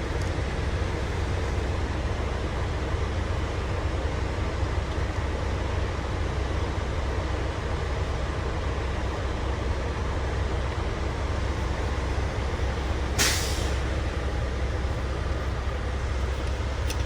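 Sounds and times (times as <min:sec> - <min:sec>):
diesel truck engine idling: 0:00.0 - 0:17.0
air brake hiss: 0:13.2 - 0:14.0.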